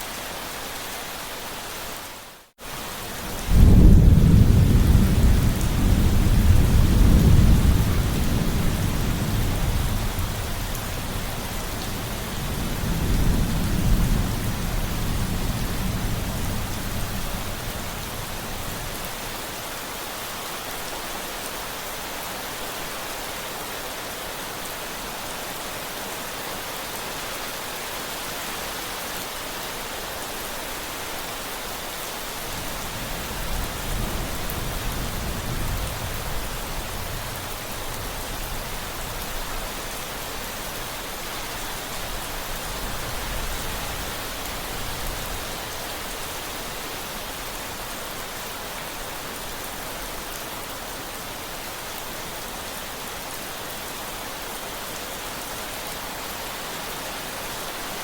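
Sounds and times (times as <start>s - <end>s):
thunder rumbling: 3.2s - 18.0s.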